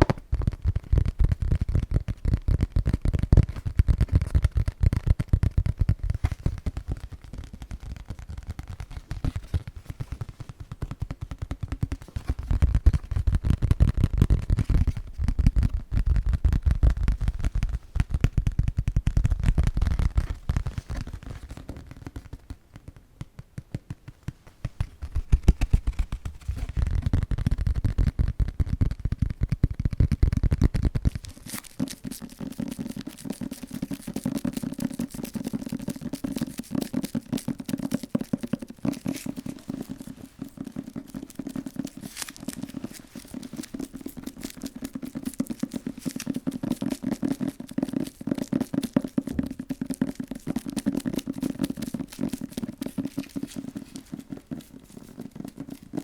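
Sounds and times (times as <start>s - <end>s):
rapid tapping: 0.0s - 56.0s.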